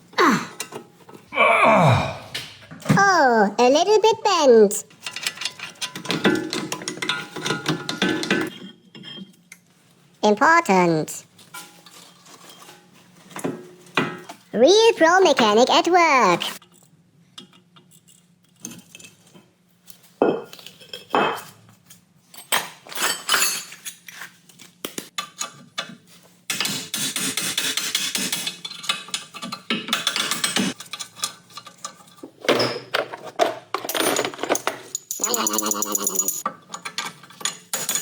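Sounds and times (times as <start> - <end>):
metal tools clanking: 33.7 - 38.0.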